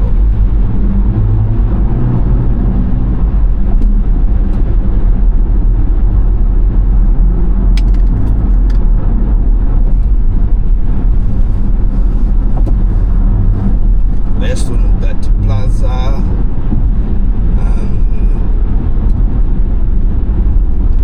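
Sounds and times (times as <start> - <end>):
car cabin road and engine noise: 0.0 - 21.0.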